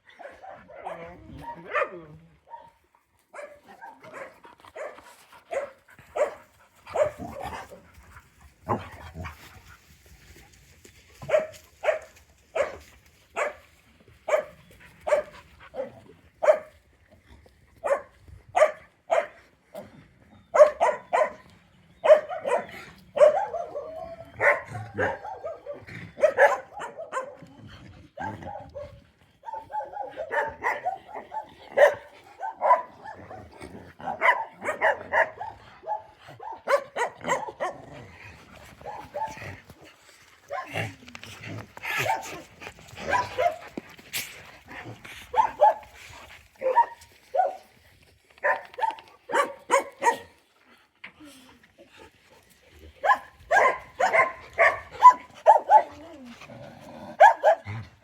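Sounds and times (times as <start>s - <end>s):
dogs barking: 0.1s - 7.9s, 11.2s - 13.6s, 14.2s - 16.7s, 17.8s - 19.4s, 20.5s - 27.6s, 28.2s - 37.9s, 38.8s - 39.7s, 41.9s - 43.8s, 44.8s - 45.9s, 46.6s - 47.7s, 48.4s - 50.4s, 53.0s - 56.2s, 57.1s - 58.0s.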